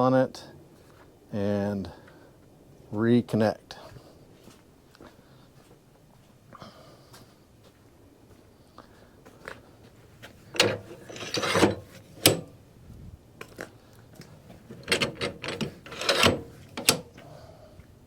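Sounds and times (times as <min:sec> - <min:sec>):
metal scraping and rattling: 0:10.4 - 0:12.6, 0:14.4 - 0:17.2.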